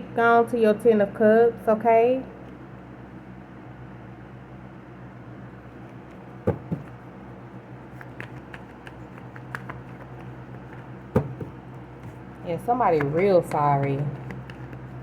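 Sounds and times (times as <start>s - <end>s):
steady low hum: 0.0s - 15.0s
sharp knocks: 6.5s - 7.0s, 11.1s - 11.6s.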